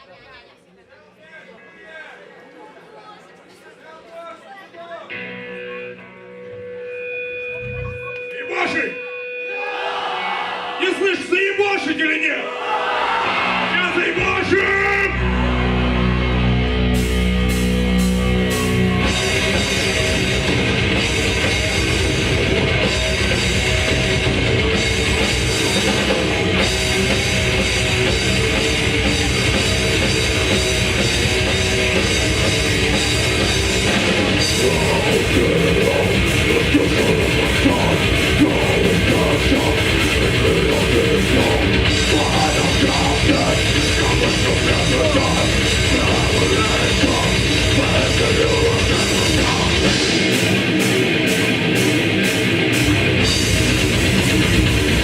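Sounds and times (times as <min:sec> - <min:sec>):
death metal band playing live: 0:12.9 - 0:55.0.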